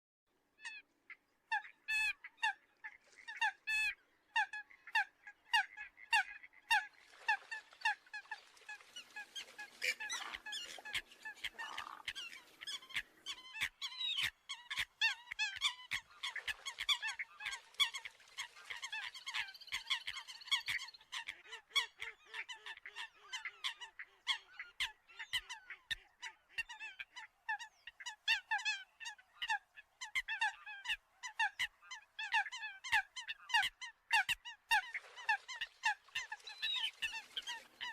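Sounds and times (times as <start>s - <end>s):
coots honking calls: 5.6s - 14.2s.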